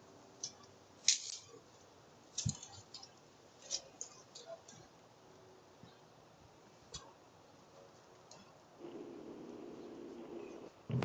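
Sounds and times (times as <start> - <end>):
sharp clicks and light knocks: 2.3 - 4.9, 8.1 - 8.6.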